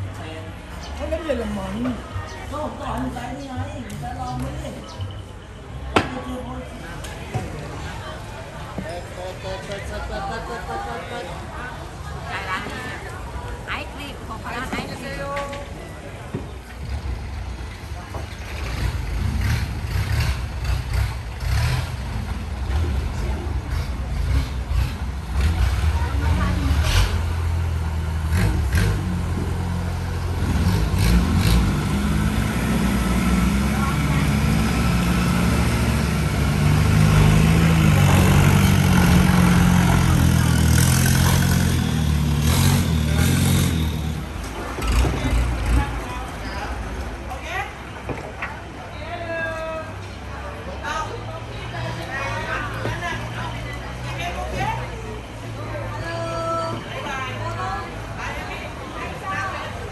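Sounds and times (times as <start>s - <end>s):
motorboat engine rumbling: 16.5s - 47.4s.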